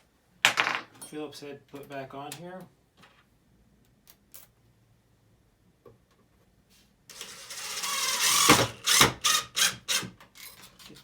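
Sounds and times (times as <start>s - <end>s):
drill running: 7.1s - 10.1s.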